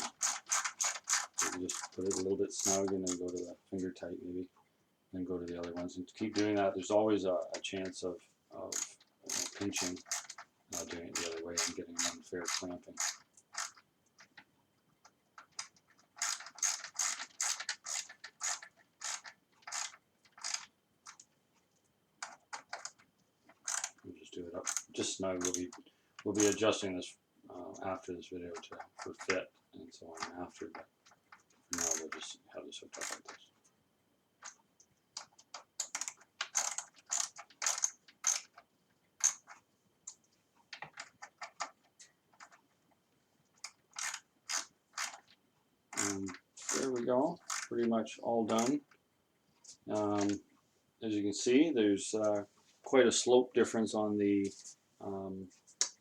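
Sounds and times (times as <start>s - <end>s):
ratchet wrench rasping: 0.0s - 2.9s, 8.7s - 13.8s, 16.2s - 20.6s, 23.6s - 24.0s, 24.6s - 25.6s, 31.8s - 32.1s, 35.8s - 38.5s, 39.2s - 39.6s, 44.0s - 45.3s, 46.0s - 47.7s.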